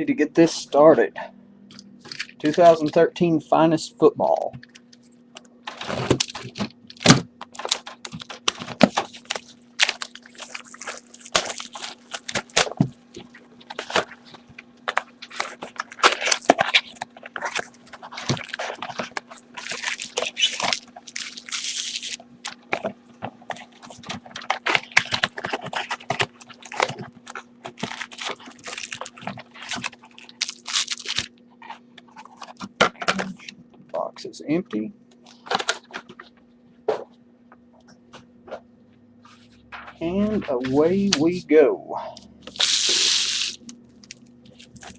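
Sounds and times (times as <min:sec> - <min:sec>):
steady low hum: 0:00.0 - 0:44.9
card pack wrappers crinkling: 0:02.0 - 0:03.0, 0:04.2 - 0:33.5, 0:35.2 - 0:36.4, 0:42.4 - 0:44.9.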